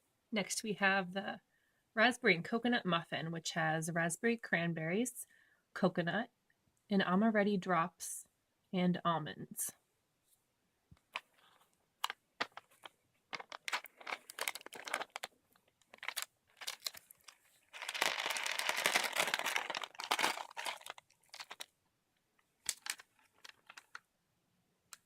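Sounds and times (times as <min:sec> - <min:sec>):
plastic packaging crinkling: 0:11.1 - 0:21.7, 0:22.6 - 0:24.0
packaging tearing and rustling: 0:11.2 - 0:21.7, 0:22.6 - 0:24.0.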